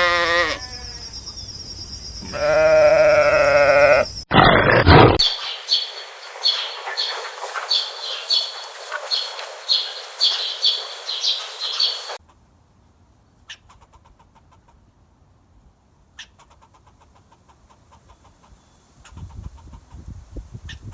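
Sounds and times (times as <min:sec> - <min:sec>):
bird chirping: 0:00.7 - 0:02.7, 0:05.2 - 0:12.2.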